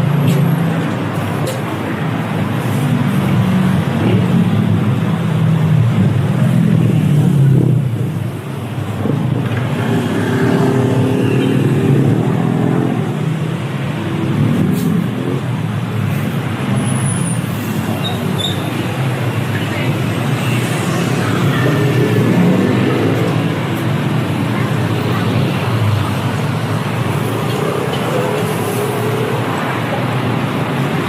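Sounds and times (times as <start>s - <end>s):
road traffic noise: 0.0s - 31.0s.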